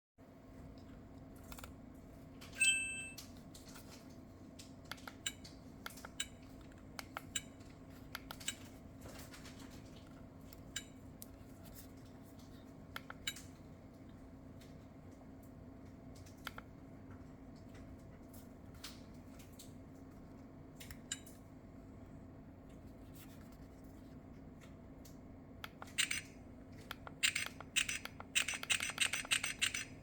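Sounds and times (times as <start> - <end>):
sharp clicks: 25.6 - 30.0.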